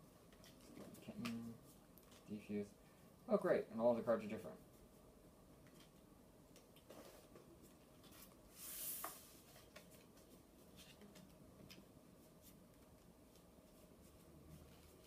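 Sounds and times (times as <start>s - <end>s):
playing cards clicking and rustling: 0.3s - 2.3s, 9.0s - 13.5s
card sliding swish: 8.6s - 9.4s.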